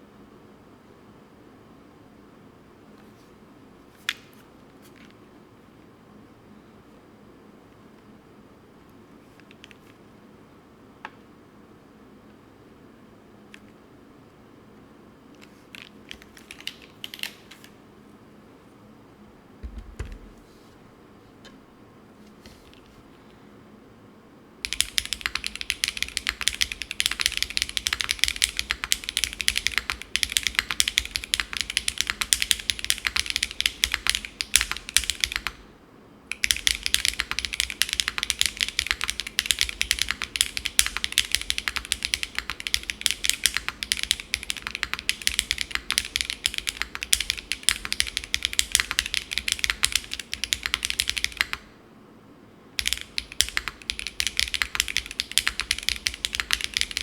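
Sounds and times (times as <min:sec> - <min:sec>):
mechanical keyboard typing: 0:15.7 - 0:17.8, 0:24.6 - 0:35.6, 0:36.3 - 0:51.7, 0:52.8 - 0:57.0.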